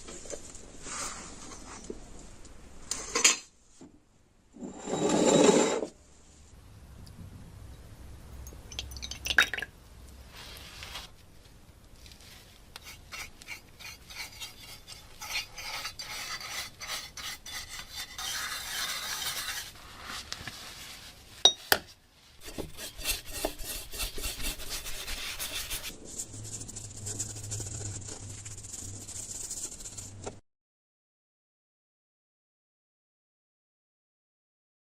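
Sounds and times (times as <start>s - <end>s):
steady hiss with low hum: 0.0s - 4.6s, 5.8s - 30.4s
scraping on rusty metal: 12.8s - 19.7s, 22.4s - 25.9s.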